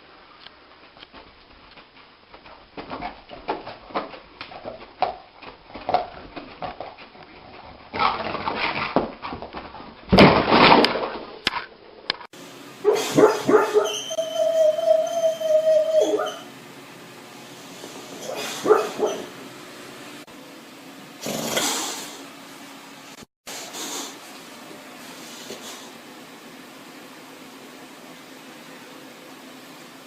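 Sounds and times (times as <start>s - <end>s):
dog whining: 12.9s - 16.5s, 18.2s - 19.3s
dog whimpering: 13.6s - 16.5s.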